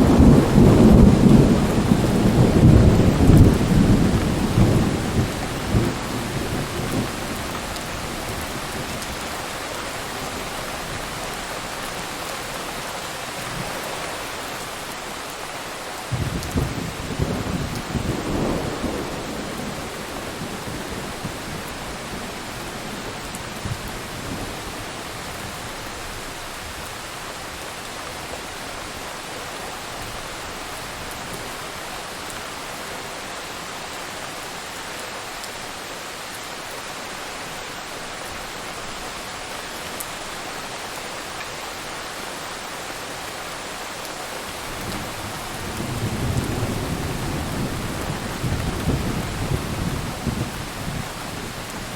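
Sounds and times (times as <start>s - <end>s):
thunder rumbling: 0.0s - 11.2s, 16.1s - 26.2s, 44.5s - 51.9s
heavy rain: 0.0s - 51.9s.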